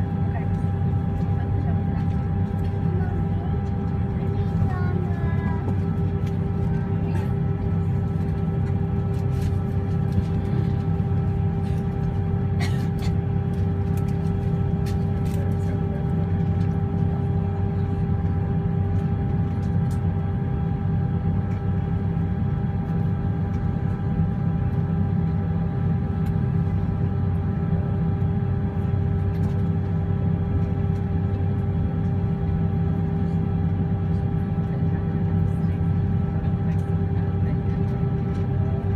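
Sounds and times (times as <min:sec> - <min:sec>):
jet engines rumbling in cabin: 0:00.0 - 0:38.9.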